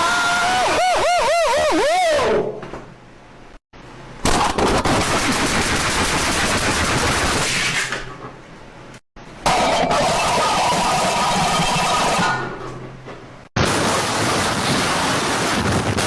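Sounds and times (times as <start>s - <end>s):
loud rapid rattling: 4.3s - 7.8s.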